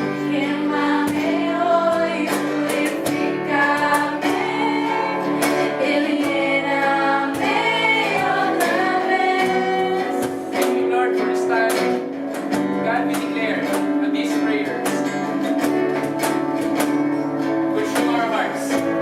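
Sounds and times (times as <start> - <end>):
voices singing together: 0.0 - 11.7
strummed acoustic guitar: 0.0 - 19.0.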